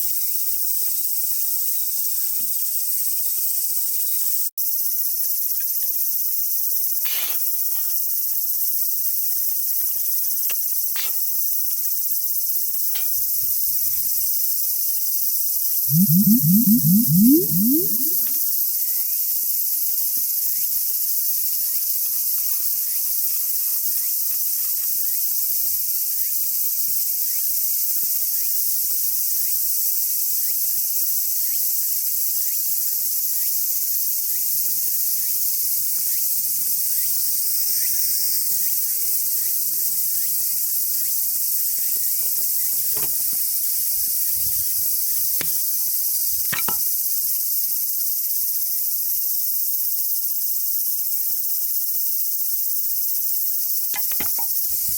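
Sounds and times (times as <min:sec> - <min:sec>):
insects chirring: 0:15.9 - 0:18.5.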